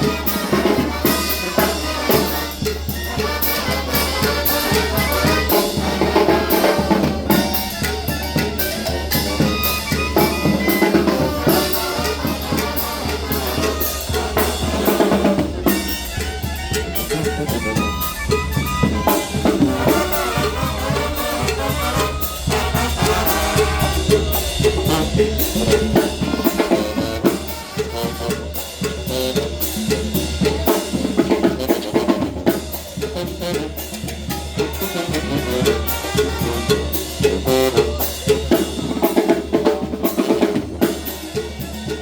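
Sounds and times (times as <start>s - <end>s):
brass band playing: 0.0s - 42.0s
low bass line: 14.3s - 27.4s.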